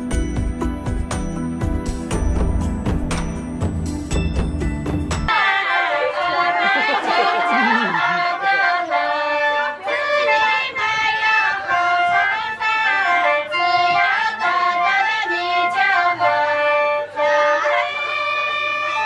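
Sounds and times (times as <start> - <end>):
women singing: 5.3 - 19.0.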